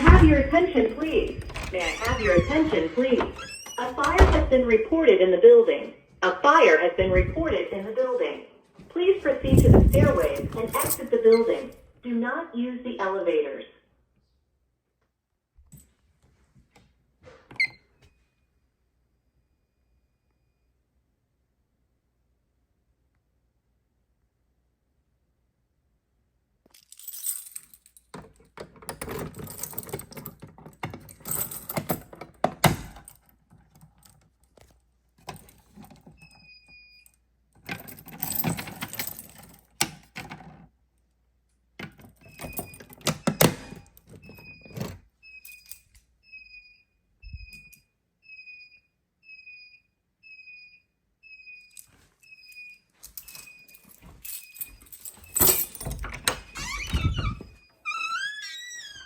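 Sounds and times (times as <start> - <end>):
rattling and clattering handling: 9.4 - 11.8, 37.6 - 40.7, 53.2 - 57.3.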